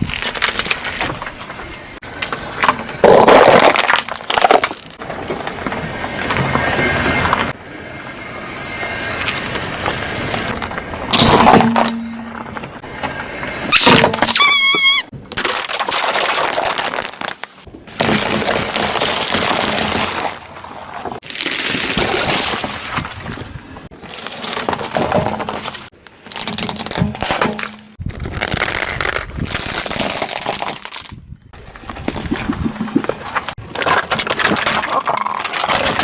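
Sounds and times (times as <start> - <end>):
objects crunching under car tyres: 0.0 - 7.6, 8.9 - 36.0.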